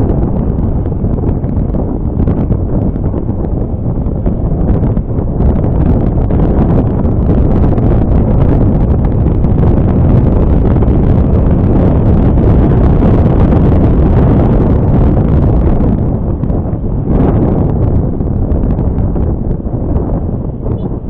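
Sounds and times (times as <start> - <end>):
scooter and road noise: 0.0 - 21.0
wind buffeting microphone: 0.0 - 21.0.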